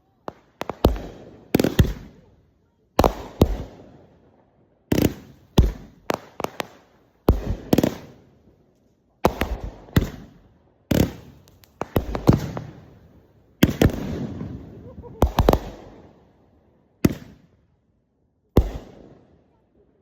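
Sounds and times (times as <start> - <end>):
fireworks bangs: 0.2 - 2.3, 3.0 - 4.0, 4.9 - 8.3, 9.2 - 16.3, 17.0 - 17.5, 18.6 - 19.3.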